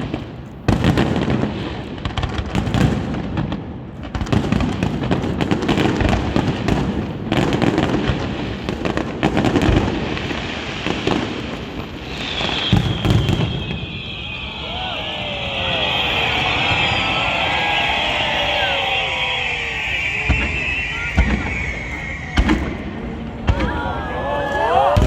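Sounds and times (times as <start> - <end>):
fireworks bursting and crackling: 0.0 - 25.0
high whistle: 11.9 - 25.0.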